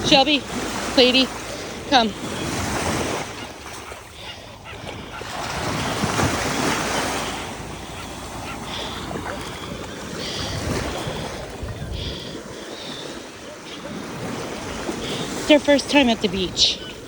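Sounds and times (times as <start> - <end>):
surf washing onto beach: 4.6 - 17.0.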